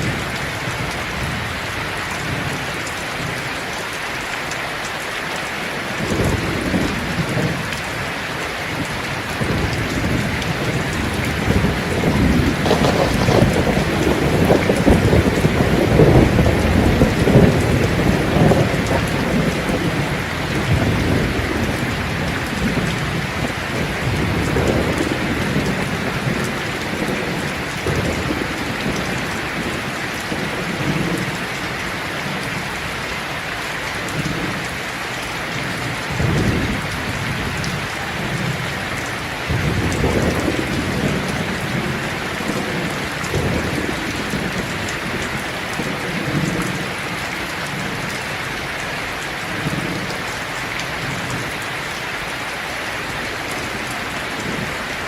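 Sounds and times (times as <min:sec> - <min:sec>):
heavy rain hissing: 0:00.0 - 0:55.0
thunder rumbling: 0:08.7 - 0:31.4, 0:35.5 - 0:47.0.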